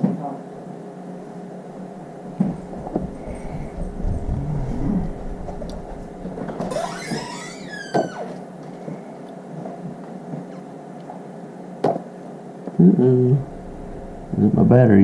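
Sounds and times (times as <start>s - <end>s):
warbling squeak: 2.5s - 8.4s.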